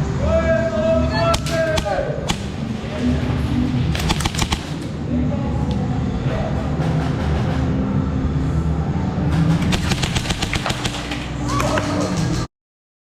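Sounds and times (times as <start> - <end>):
steady low rumble: 0.0 - 12.5
airsoft rifle firing bursts: 1.4 - 2.6, 4.0 - 4.8, 9.6 - 12.0.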